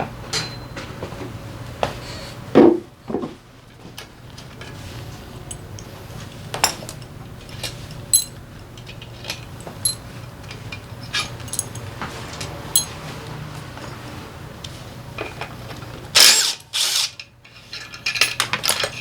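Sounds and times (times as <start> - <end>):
metal tools clinking: 8.1 - 13.1, 16.2 - 19.0.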